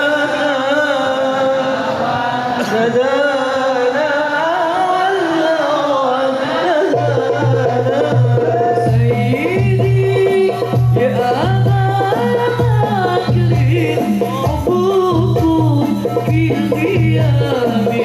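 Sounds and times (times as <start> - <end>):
solo voice singing: 2.5 - 18.0.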